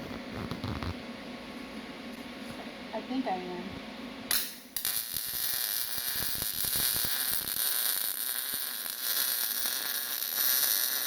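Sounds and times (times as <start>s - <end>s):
sharp welding pops: 4.3s - 11.0s
welding arc crackling hiss: 4.3s - 11.0s.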